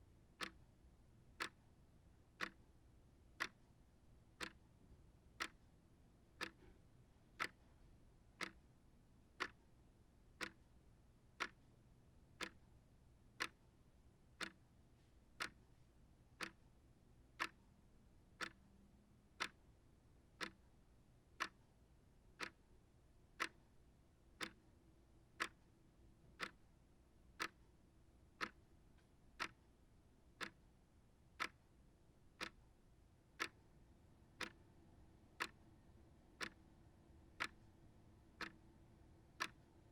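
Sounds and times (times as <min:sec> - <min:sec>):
shelf clock ticking: 0:00.4 - 0:00.6, 0:02.4 - 0:02.7, 0:03.4 - 0:03.6, 0:04.4 - 0:04.6, 0:05.4 - 0:05.6, 0:06.4 - 0:06.7, 0:07.4 - 0:07.7, 0:08.4 - 0:08.6, 0:09.4 - 0:09.6, 0:10.4 - 0:10.6, 0:11.4 - 0:11.7, 0:12.4 - 0:12.7, 0:13.4 - 0:13.6, 0:14.4 - 0:14.6, 0:15.4 - 0:15.6, 0:16.4 - 0:16.6, 0:17.4 - 0:17.6, 0:18.4 - 0:18.7, 0:19.4 - 0:19.7, 0:20.4 - 0:20.6, 0:21.4 - 0:21.6, 0:22.4 - 0:22.7, 0:23.4 - 0:23.8, 0:24.4 - 0:24.6, 0:25.4 - 0:25.7, 0:26.3 - 0:26.7, 0:27.4 - 0:27.6, 0:28.4 - 0:28.7, 0:29.4 - 0:29.7, 0:30.4 - 0:30.6, 0:31.4 - 0:31.7, 0:32.4 - 0:32.6, 0:33.4 - 0:33.7, 0:34.4 - 0:34.6, 0:35.3 - 0:35.7, 0:36.4 - 0:36.7, 0:37.4 - 0:37.7, 0:38.4 - 0:38.7, 0:39.4 - 0:39.9.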